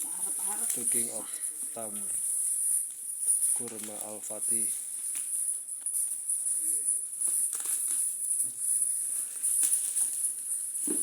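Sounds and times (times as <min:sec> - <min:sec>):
package rustling and clicking: 0:07.2 - 0:08.1.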